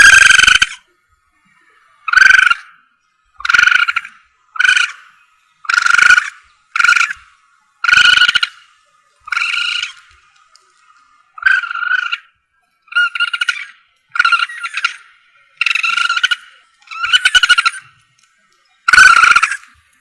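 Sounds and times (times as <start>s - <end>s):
harsh raspy animal calls: 0.0s - 0.8s, 2.0s - 2.8s, 3.4s - 10.1s, 11.4s - 17.9s, 18.9s - 19.7s.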